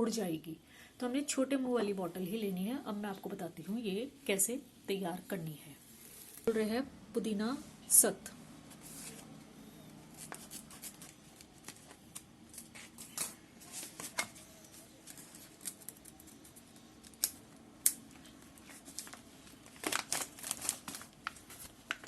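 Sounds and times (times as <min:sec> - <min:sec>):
packet crinkling: 0:10.1 - 0:17.4, 0:18.2 - 0:22.0.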